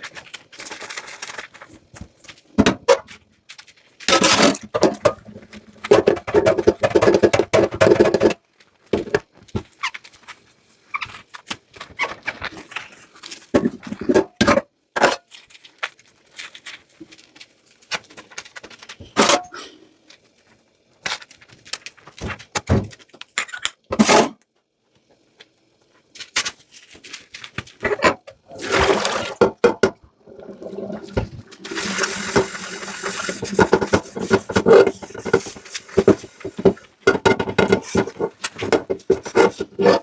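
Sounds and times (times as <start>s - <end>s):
dishes clattering in sink: 4.1s - 5.2s, 5.8s - 8.4s, 13.6s - 15.2s, 27.8s - 40.0s
washing noise: 26.7s - 40.0s.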